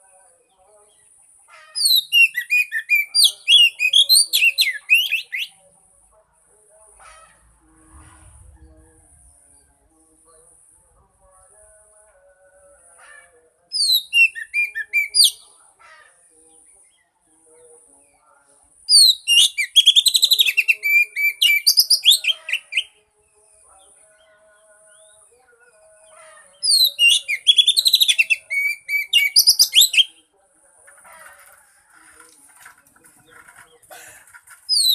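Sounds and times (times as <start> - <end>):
bird singing whistles and trills: 1.8 - 5.6, 13.7 - 15.4, 18.9 - 23.0, 26.6 - 30.2.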